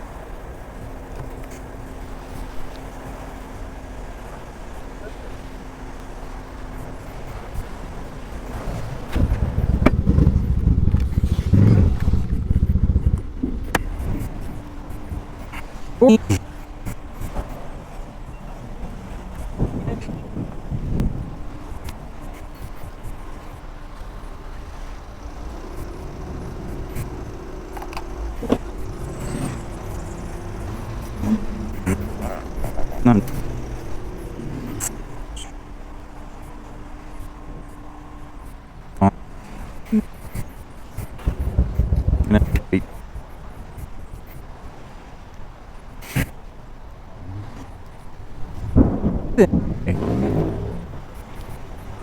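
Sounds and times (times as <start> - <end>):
motorcycle engine running: 0.0 - 39.2.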